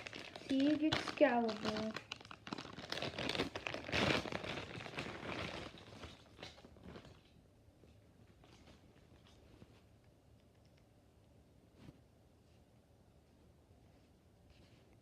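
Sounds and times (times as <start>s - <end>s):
packaging crinkling: 0.0s - 7.4s.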